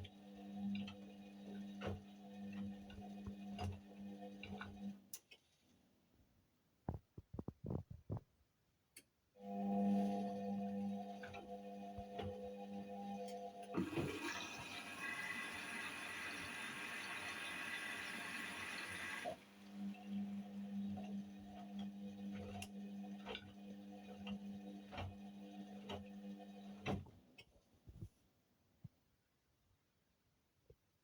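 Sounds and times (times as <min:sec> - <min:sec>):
water rushing into washing machine: 0:00.0 - 0:04.9, 0:13.6 - 0:27.1
washing machine hum: 0:00.0 - 0:05.1, 0:09.5 - 0:27.3.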